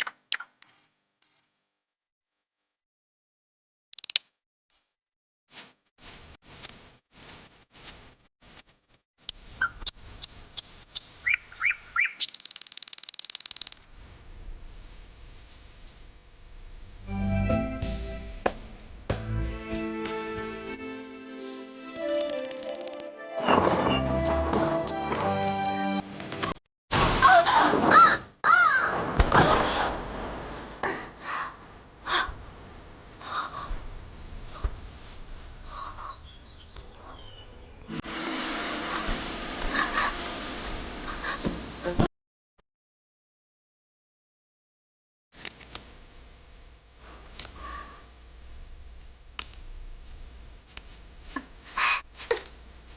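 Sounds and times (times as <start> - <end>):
bird chirping and trilling: 0.0 - 1.5, 11.2 - 12.6, 35.7 - 37.9.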